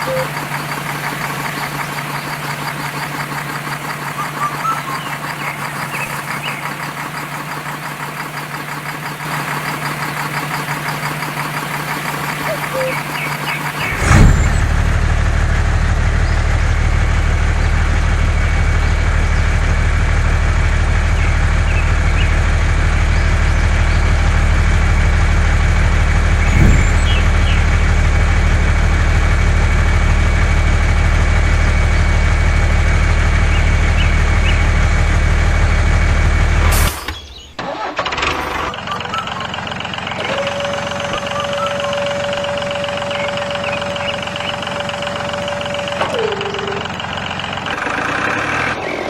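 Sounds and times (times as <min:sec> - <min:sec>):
motor humming: 0:00.0 - 0:15.1, 0:26.2 - 0:28.0, 0:38.8 - 0:49.0.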